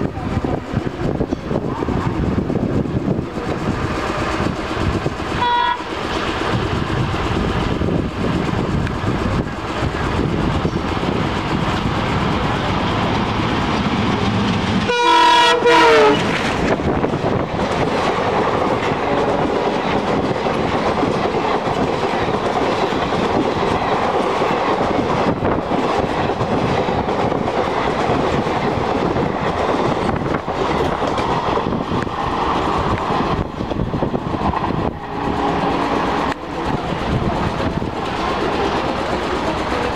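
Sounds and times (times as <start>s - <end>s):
train running noise: 0.0s - 39.9s
wheels clattering on rail joints: 0.0s - 39.9s
locomotive horn: 5.4s - 5.9s, 14.8s - 16.4s.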